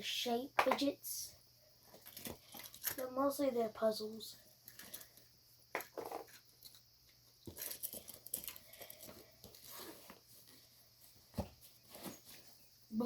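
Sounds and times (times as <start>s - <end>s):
plastic toys clicking and rustling: 2.0s - 3.1s, 4.6s - 5.2s, 7.4s - 9.6s.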